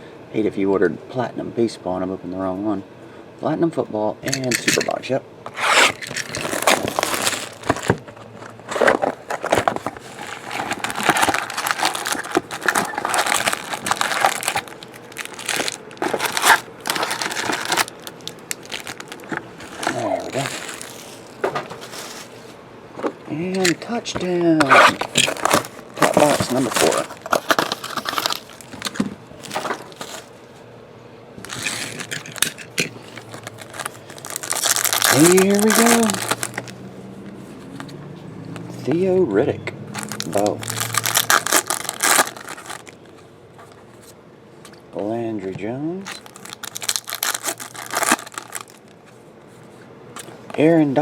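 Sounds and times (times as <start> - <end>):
plastic wrap crinkling and tearing: 5.5 - 8.1, 8.7 - 22.4, 24.6 - 30.3, 31.4 - 36.8, 39.9 - 43.0, 46.1 - 49.0.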